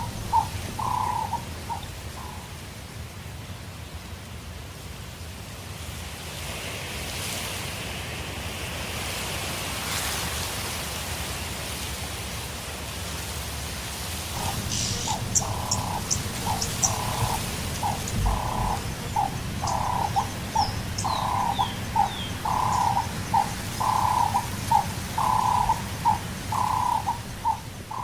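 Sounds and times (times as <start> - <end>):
steady rushing noise: 0.0 - 2.5, 14.3 - 28.0
bird calling short notes: 14.4 - 28.0.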